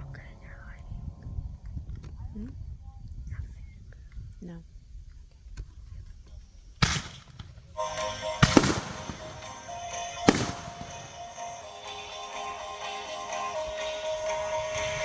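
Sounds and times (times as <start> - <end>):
fireworks banging: 6.8 - 12.1
music with held tones: 7.8 - 15.0.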